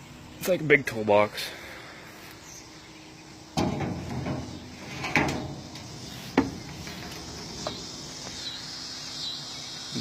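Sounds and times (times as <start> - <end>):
crickets chirring: 0.0 - 10.0
metal toolbox clunks and knocks: 3.6 - 7.8.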